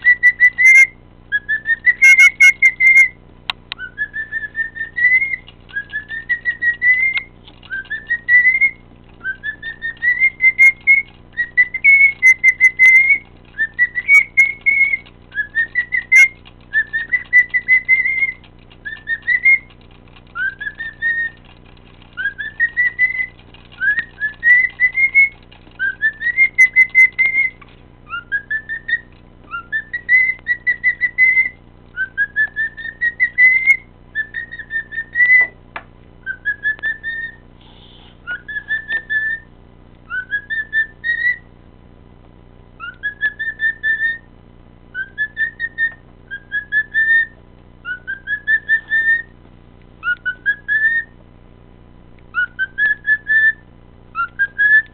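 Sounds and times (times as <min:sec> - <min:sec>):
cockatiel whistling: 0:00.0 - 0:03.2, 0:03.8 - 0:19.7, 0:20.3 - 0:21.4, 0:22.1 - 0:35.6, 0:36.2 - 0:39.5, 0:40.1 - 0:41.5, 0:42.8 - 0:44.3, 0:45.0 - 0:49.3, 0:50.0 - 0:51.2, 0:52.3 - 0:54.9
faint clicks: 0:05.3 - 0:06.3, 0:07.1 - 0:08.1, 0:13.2 - 0:27.8.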